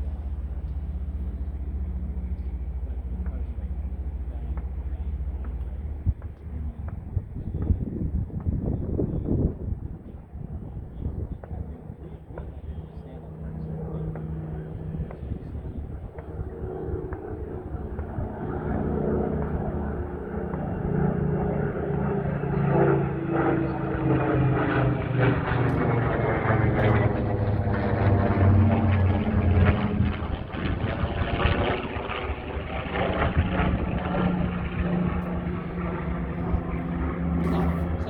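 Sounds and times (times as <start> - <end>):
propeller plane flying past: 0.0 - 38.0.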